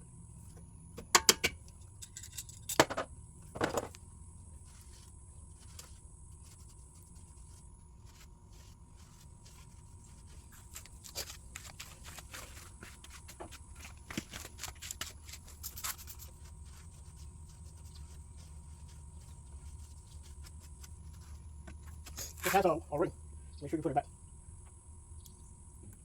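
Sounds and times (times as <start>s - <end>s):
low steady hum: 0.0s - 26.0s
metal tools clicking and scraping: 1.2s - 3.0s.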